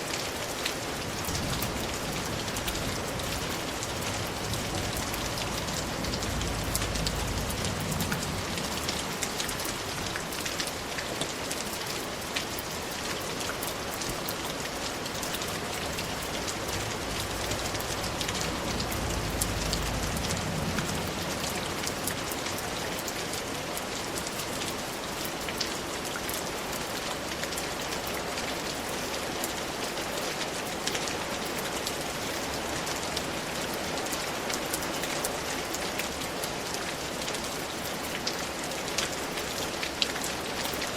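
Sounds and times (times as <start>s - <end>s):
steady rain falling: 0.0s - 40.9s
low rumble: 3.0s - 10.0s, 15.8s - 23.0s.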